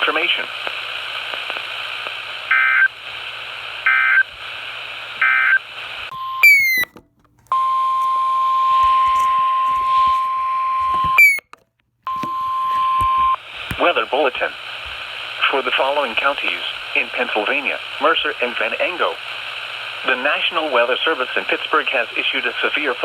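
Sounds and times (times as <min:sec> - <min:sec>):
radio static hiss: 0:00.0 - 0:06.8, 0:08.5 - 0:11.2, 0:12.2 - 0:23.0
two-tone data chirps: 0:06.2 - 0:06.9.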